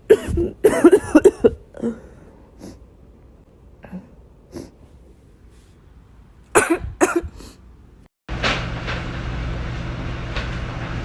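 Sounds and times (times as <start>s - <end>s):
person coughing: 0.0s - 2.8s, 6.5s - 7.6s.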